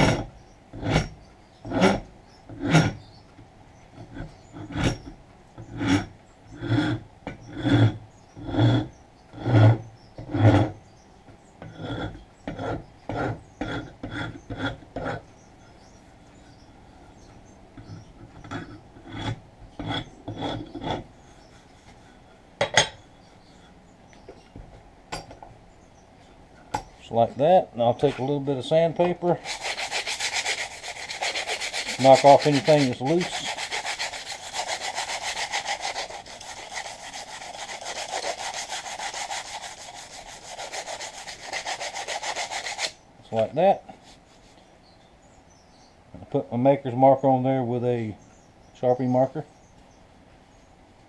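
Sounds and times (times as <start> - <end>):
rasp scraping wood: 0.0 - 3.1, 4.0 - 10.8, 11.6 - 15.3, 17.8 - 22.1, 29.0 - 43.0
sandpaper rubbing on wood: 29.4 - 43.0.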